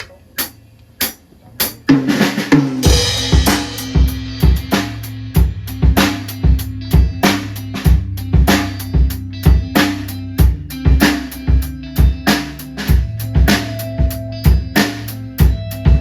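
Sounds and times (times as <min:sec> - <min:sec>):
drumstick count-in clicks: 0:00.0 - 0:01.8
drum kit beat: 0:00.0 - 0:16.0
bass and guitar: 0:02.8 - 0:16.0.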